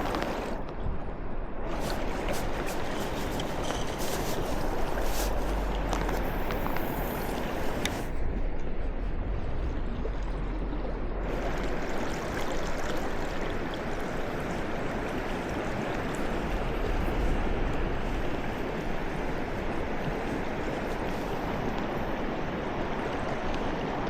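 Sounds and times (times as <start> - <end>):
river water rushing: 0.0 - 0.6, 1.7 - 8.1.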